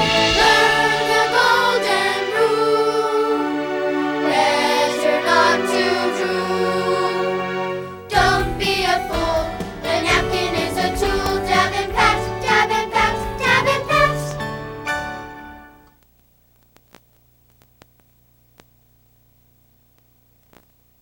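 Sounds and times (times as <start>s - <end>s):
backing track with beat: 0.0s - 2.1s, 8.1s - 15.3s
children's song singing: 0.0s - 15.3s.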